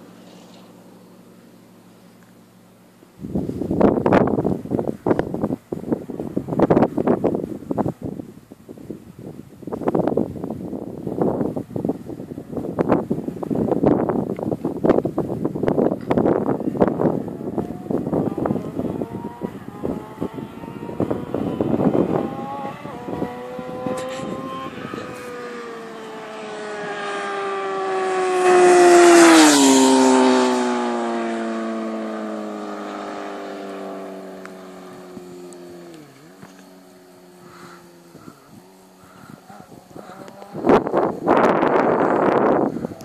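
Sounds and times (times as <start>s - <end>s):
motorcycle passing at speed: 3.2s - 8.2s, 9.7s - 43.0s
wind on microphone: 3.2s - 43.0s.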